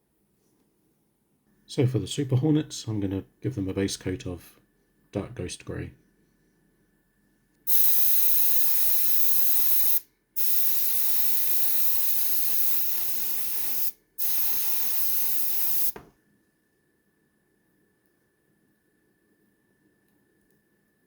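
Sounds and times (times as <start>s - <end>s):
airbrush spraying hiss: 7.7s - 16.0s.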